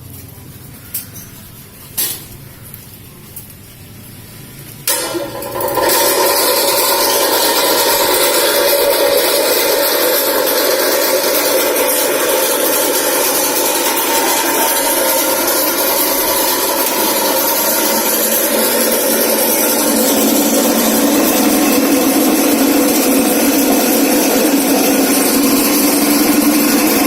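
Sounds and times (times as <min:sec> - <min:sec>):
oil spinner whirring: 0:04.8 - 0:27.0.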